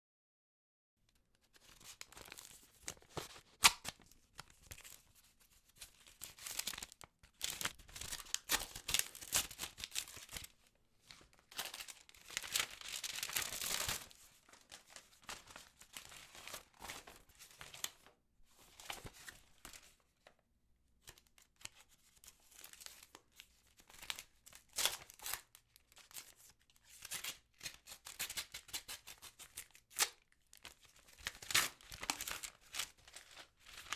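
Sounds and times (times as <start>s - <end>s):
sharp paper snap: 2.1s - 4.0s, 27.1s - 30.2s
paper envelope tearing: 11.5s - 14.2s, 27.1s - 33.9s.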